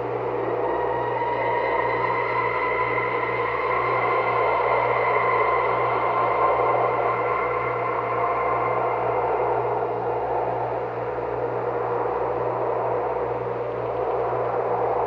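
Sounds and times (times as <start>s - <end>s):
low hum: 0.0s - 15.0s
rough noisy drone layer: 0.0s - 15.0s.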